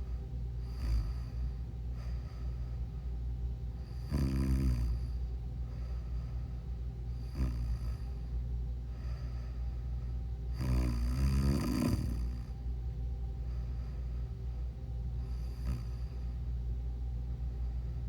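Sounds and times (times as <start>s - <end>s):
steady low hum: 0.0s - 18.0s
person snoring: 0.6s - 1.4s, 3.9s - 5.2s, 7.2s - 8.2s, 10.5s - 12.5s, 15.3s - 16.2s.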